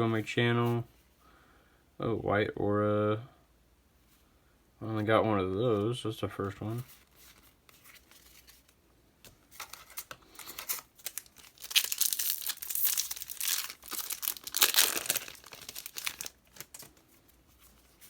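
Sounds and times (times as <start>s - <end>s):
foil wrapper crinkling and tearing: 9.6s - 17.0s.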